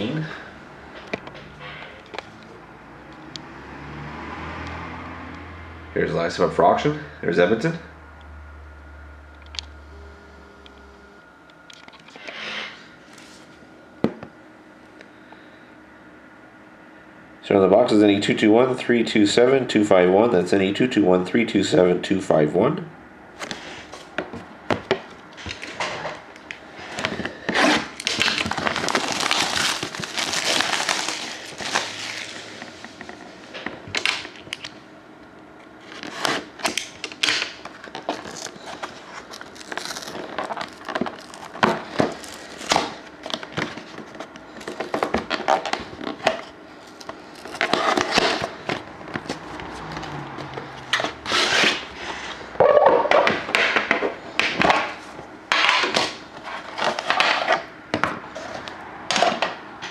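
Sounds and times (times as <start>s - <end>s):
plastic wrapping crinkling and tearing: 26.9s - 33.2s, 35.8s - 50.0s.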